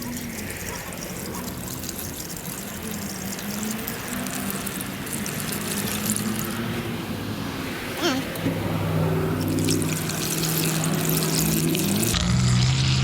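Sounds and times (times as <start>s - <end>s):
oil pouring trickling and glugging: 0.0s - 7.0s, 9.3s - 12.2s.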